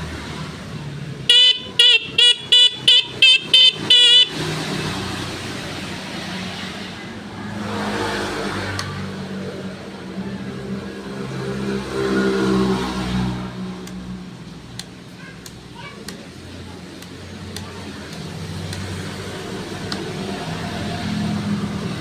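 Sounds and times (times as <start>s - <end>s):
motorbike horn beeping: 1.3s - 4.6s.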